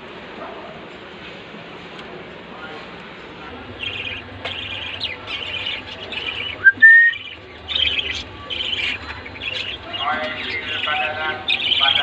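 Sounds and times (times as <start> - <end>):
budgerigars chirping and chattering: 3.5 - 12.0.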